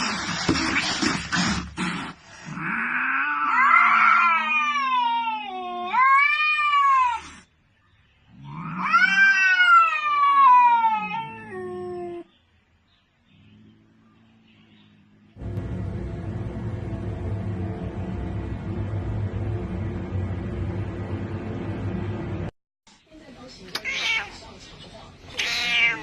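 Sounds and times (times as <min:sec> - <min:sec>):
cat yowling: 0:03.0 - 0:07.4, 0:08.5 - 0:12.3, 0:25.3 - 0:26.0.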